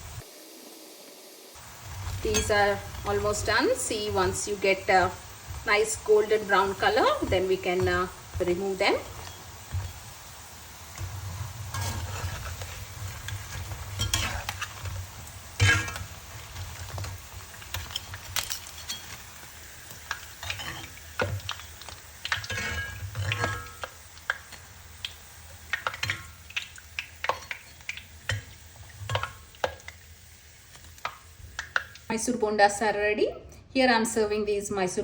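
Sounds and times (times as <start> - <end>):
batter balls sizzling in hot oil: 0.0 - 33.3
spoon scraping and clinking on pan: 2.3 - 2.8, 11.7 - 14.9, 15.6 - 16.1, 17.6 - 19.2, 20.1 - 24.0.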